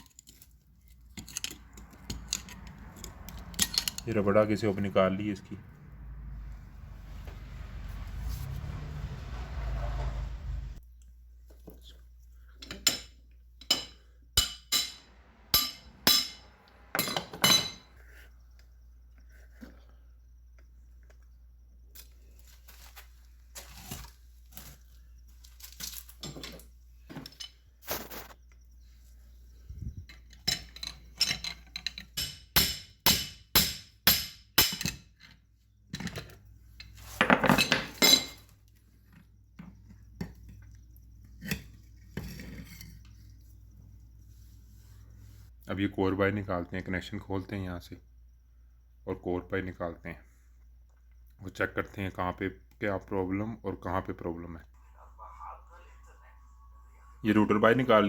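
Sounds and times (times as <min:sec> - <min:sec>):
tools clinking on metal: 0:00.0 - 0:04.2, 0:12.6 - 0:17.9, 0:30.1 - 0:36.2
metal clatter: 0:00.0 - 0:04.3, 0:12.6 - 0:18.0.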